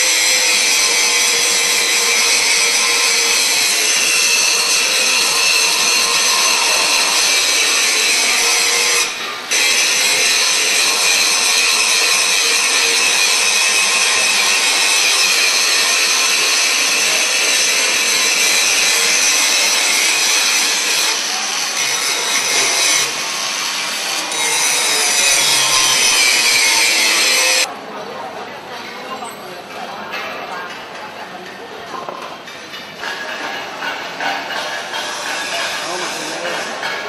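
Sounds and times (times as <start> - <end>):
welding arc hissing and crackling: 0.0 - 27.7.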